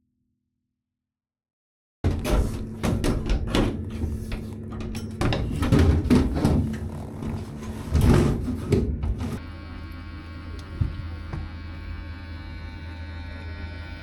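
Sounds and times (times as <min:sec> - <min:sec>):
knocks and clatter: 0:02.1 - 0:09.4
steady low hum: 0:02.1 - 0:14.0.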